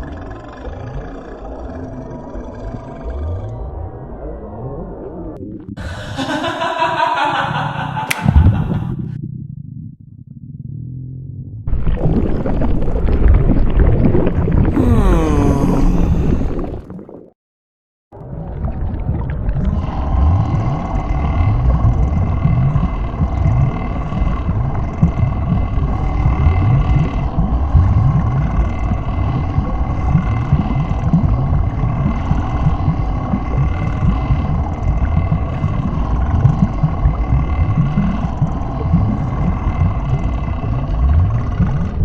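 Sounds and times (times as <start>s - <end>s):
stomach gurgling and rumbling: 0.0s - 6.1s, 8.1s - 17.4s, 18.2s - 42.0s
steady hum: 5.2s - 9.2s, 19.6s - 42.0s.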